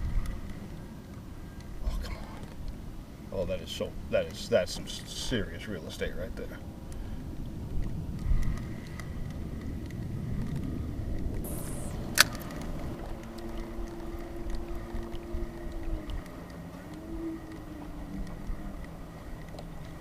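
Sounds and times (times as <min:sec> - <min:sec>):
steady low hum: 0:00.0 - 0:20.0
wind rumble: 0:00.0 - 0:20.0
reel click: 0:07.7 - 0:20.0
fishing line hissing out: 0:11.4 - 0:17.8.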